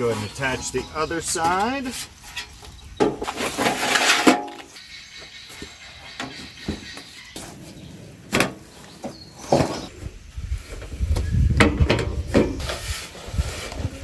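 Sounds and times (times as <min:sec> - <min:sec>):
metal parts scraping: 0:00.0 - 0:05.0
metal knocks and clanks: 0:03.0 - 0:04.7.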